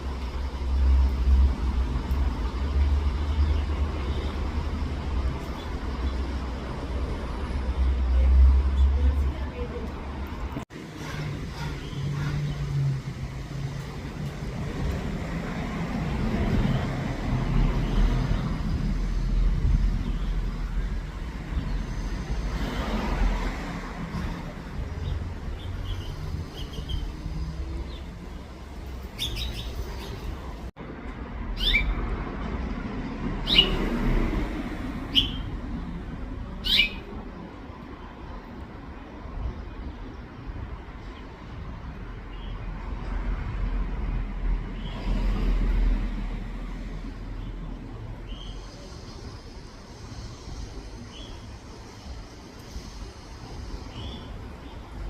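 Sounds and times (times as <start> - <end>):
finches chirping: 29.0 - 30.3, 35.1 - 35.6, 36.6 - 37.1.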